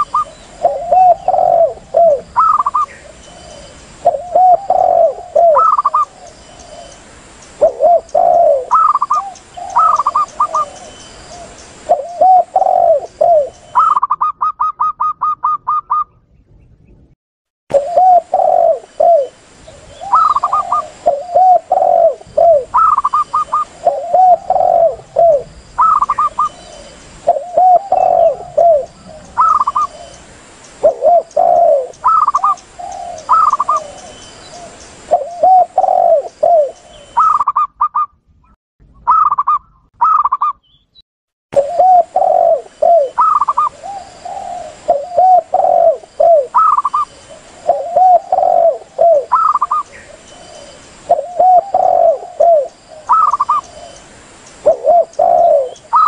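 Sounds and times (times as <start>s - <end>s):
doves cooing: 0.0s - 6.9s, 7.6s - 16.2s, 17.7s - 30.2s, 30.8s - 38.1s, 41.6s - 56.0s
high-pitched bird notes: 7.6s - 11.2s, 11.9s - 16.2s, 20.0s - 30.2s, 35.2s - 38.2s, 38.8s - 41.0s, 41.6s - 43.8s, 44.9s - 47.1s, 47.7s - 50.1s, 51.1s - 54.0s.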